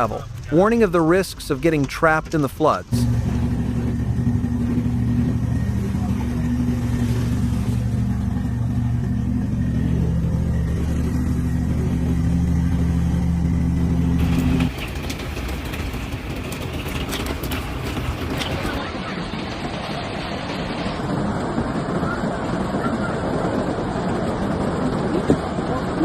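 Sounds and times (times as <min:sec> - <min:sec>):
engine running steadily: 0:00.0 - 0:26.0.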